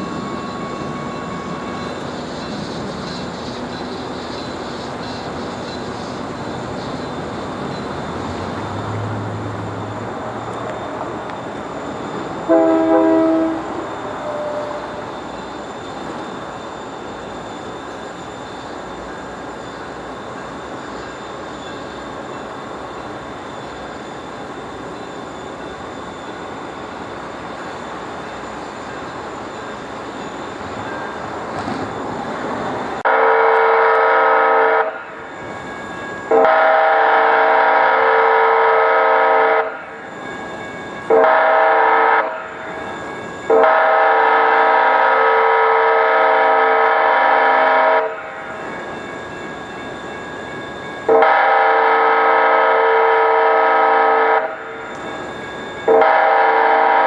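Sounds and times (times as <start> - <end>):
diesel railcar rumbling: 0.0 - 57.0
train horn blasts: 12.4 - 15.0, 33.0 - 35.2, 36.3 - 40.0, 41.1 - 42.6, 43.5 - 48.4, 51.1 - 54.8, 55.9 - 57.0.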